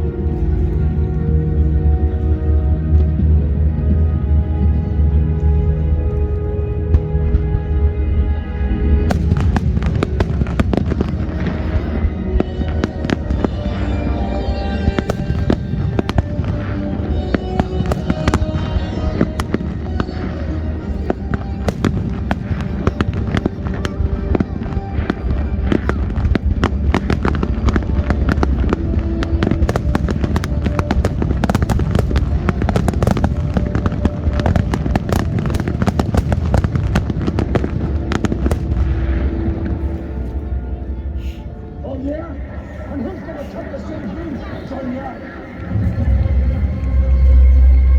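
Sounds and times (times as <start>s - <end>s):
music: 0.0s - 47.9s
fireworks bangs and crackles: 8.4s - 40.4s.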